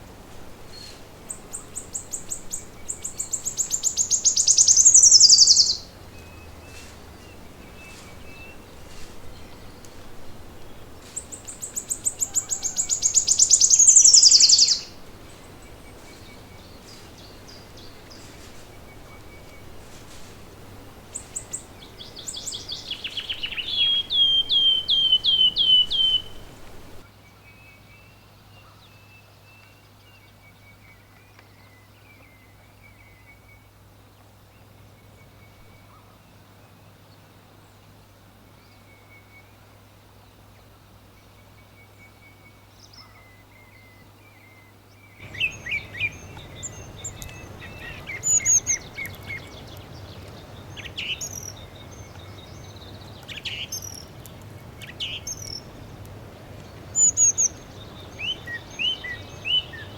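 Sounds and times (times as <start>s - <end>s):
wild birds chirping: 0.0s - 27.0s, 41.3s - 59.9s
low steady hum: 14.8s - 27.0s.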